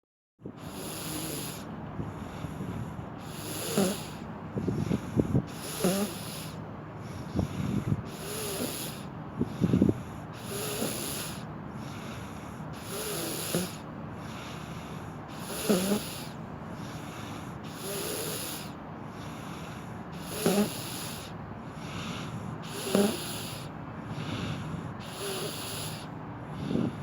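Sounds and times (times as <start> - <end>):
person snoring loudly: 0.6 - 1.7, 3.2 - 4.2, 5.5 - 6.6, 8.1 - 9.1, 10.4 - 12.0, 12.8 - 13.8, 15.3 - 17.0, 17.6 - 19.3, 20.2 - 21.3, 22.6 - 24.4, 25.0 - 27.0.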